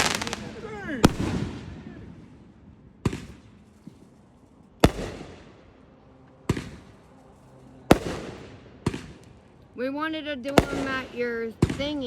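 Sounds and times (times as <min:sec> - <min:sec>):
fireworks bangs: 0:00.0 - 0:05.7, 0:06.4 - 0:07.2, 0:07.9 - 0:09.4, 0:10.6 - 0:12.0.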